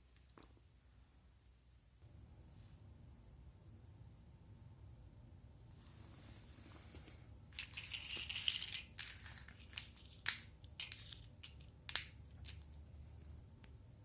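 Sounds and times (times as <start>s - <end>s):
small parts clicking: 7.6s - 12.8s.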